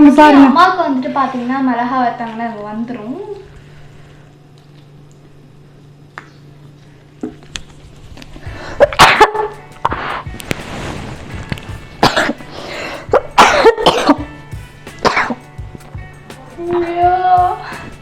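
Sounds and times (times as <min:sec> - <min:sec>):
woman coughing harshly: 0:08.6 - 0:09.5, 0:12.0 - 0:12.5, 0:13.1 - 0:14.3, 0:15.0 - 0:15.4.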